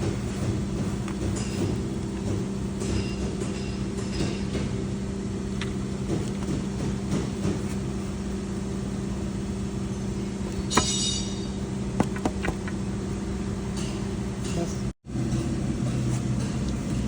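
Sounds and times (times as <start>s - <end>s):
steady mechanical hum: 0.0s - 17.0s
sharp clicks and knocks: 12.0s - 12.8s.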